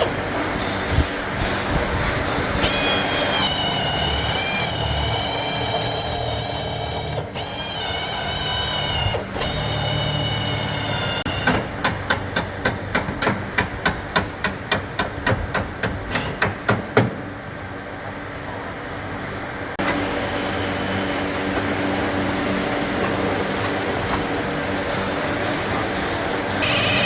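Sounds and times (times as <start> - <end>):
high-pitched mechanical whine: 2.5 - 11.6, 26.4 - 27.0.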